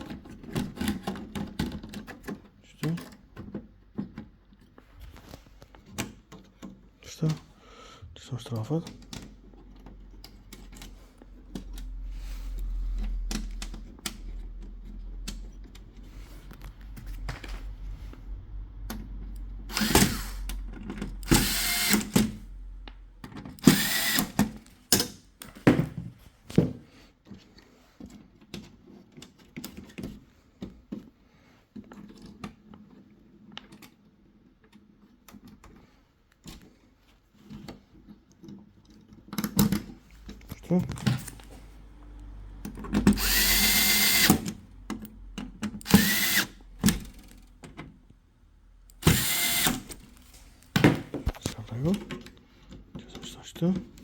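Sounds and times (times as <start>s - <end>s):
electric screwdriver motor hum: 19.7s - 20.4s, 21.2s - 22.1s, 23.7s - 24.4s, 43.1s - 44.5s, 45.8s - 46.6s, 49.0s - 50.0s.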